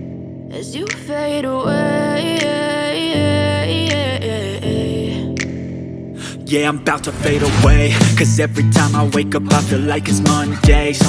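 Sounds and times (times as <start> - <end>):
slow pop song melody: 0.0 - 11.0.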